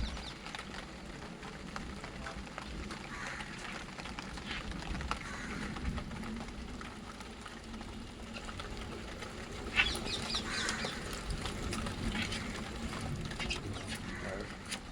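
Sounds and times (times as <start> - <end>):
rain falling: 0.0 - 14.9
parrots calling: 9.7 - 11.2.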